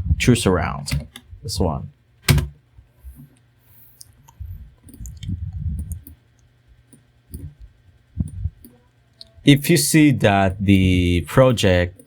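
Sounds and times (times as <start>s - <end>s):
soft low thuds: 4.4s - 6.1s, 7.3s - 8.7s.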